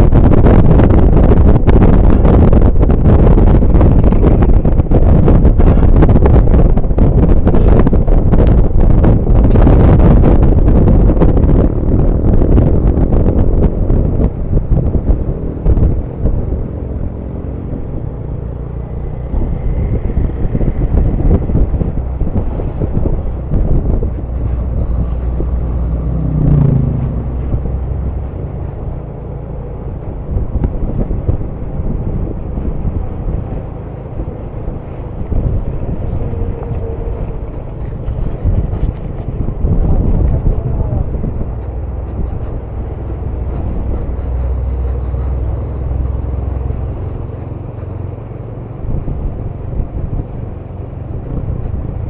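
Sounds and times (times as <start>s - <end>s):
bus diesel engine running: 0.0s - 52.0s.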